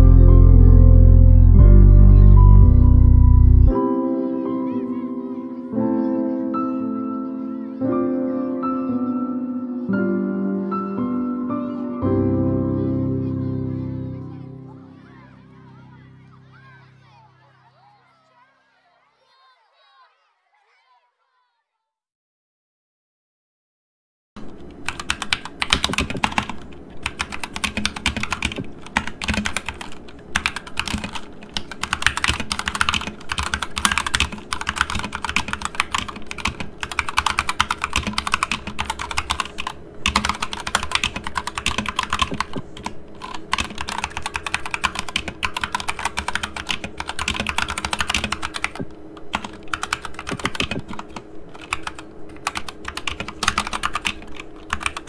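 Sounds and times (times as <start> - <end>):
muted keyboard typing: 24.4 - 55.0.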